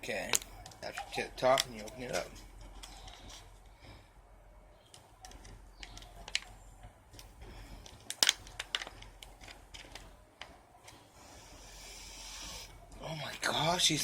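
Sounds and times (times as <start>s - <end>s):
packet crinkling: 0.2s - 3.6s, 4.9s - 11.0s.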